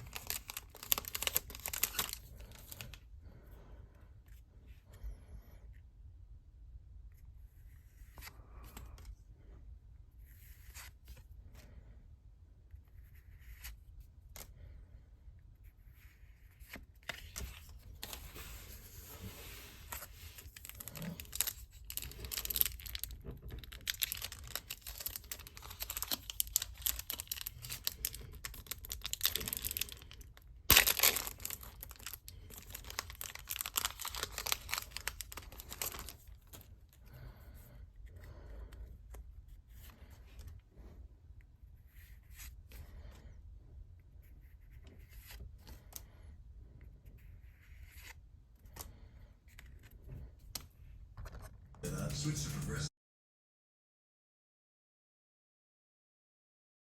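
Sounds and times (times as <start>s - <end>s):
packaging tearing: 0.0s - 2.9s, 20.4s - 36.2s
card packaging crinkling: 0.0s - 3.0s, 19.7s - 36.3s.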